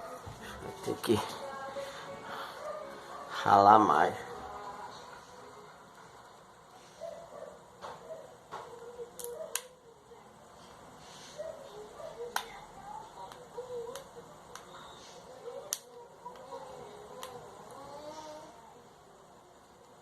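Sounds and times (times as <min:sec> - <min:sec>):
faint wavering background sounds: 0:00.0 - 0:20.0
sharp clicks of small parts: 0:09.2 - 0:09.7.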